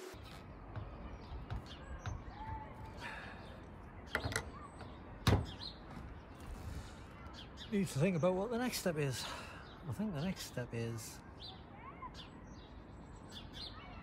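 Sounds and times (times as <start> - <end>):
knocks and clunks: 0.6 - 3.0, 4.1 - 6.2.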